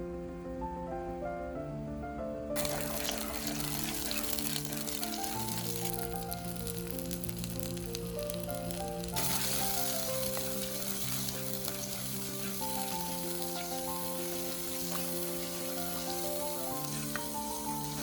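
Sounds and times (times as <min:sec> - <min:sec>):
food sizzling in a pan: 0:02.6 - 0:18.0.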